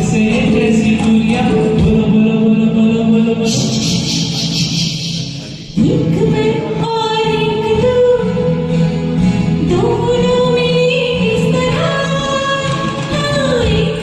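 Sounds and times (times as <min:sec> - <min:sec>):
karaoke backing track: 0:00.0 - 0:14.0
woman singing: 0:05.8 - 0:08.7, 0:09.6 - 0:14.0.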